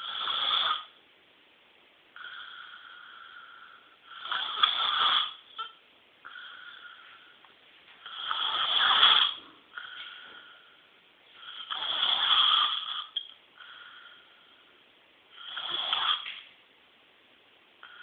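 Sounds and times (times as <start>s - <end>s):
person snoring: 0.0s - 0.9s, 2.2s - 7.2s, 8.0s - 10.8s, 11.4s - 14.3s, 15.3s - 16.3s
soft breaths: 2.2s - 16.6s.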